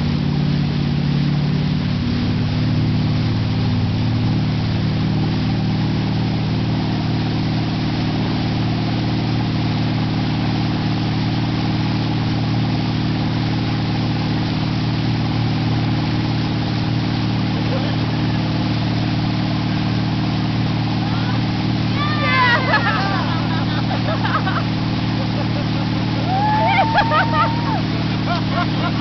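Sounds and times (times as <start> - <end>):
motorboat engine running: 0.0 - 29.0
water and wind rushing: 0.0 - 29.0.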